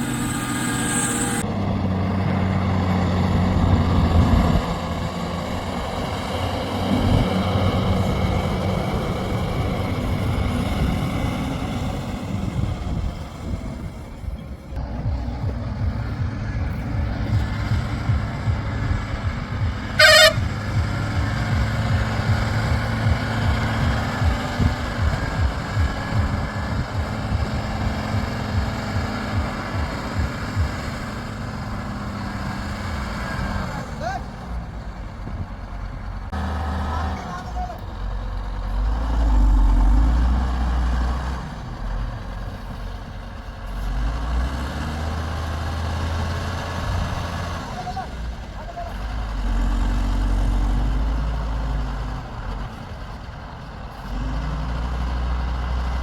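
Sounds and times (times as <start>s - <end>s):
heavy diesel engine throbbing: 0.0s - 56.0s
horn blast: 15.1s - 30.8s.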